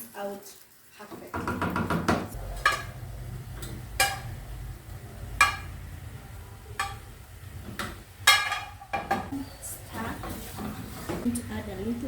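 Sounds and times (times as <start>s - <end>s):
steady low hum: 2.4s - 12.0s.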